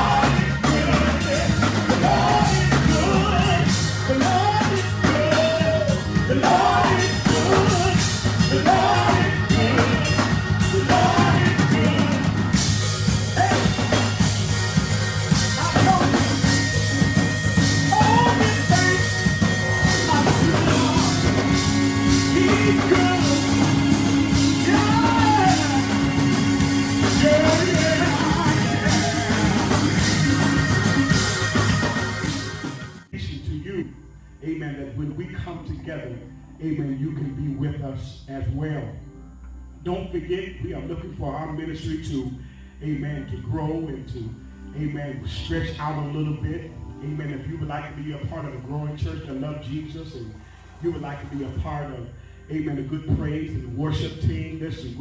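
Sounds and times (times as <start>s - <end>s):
voices singing: 0.0s - 33.0s
band with drums and bass: 0.0s - 33.1s.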